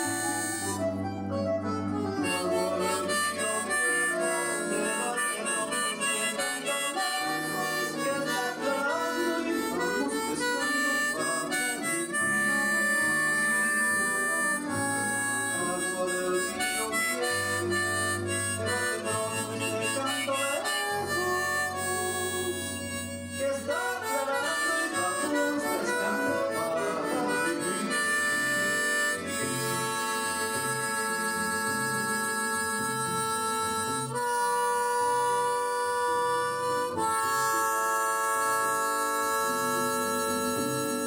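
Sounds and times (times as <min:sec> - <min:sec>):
bass line accompaniment: 0:00.0 - 0:06.4
harmonica melody: 0:00.0 - 0:41.0.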